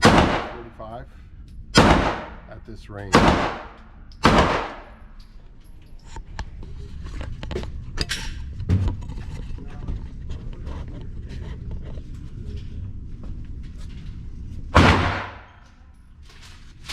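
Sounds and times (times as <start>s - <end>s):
pistol shot: 0.0s - 0.7s, 1.7s - 2.4s, 3.1s - 5.0s, 14.8s - 15.5s
low rumble: 0.0s - 16.3s.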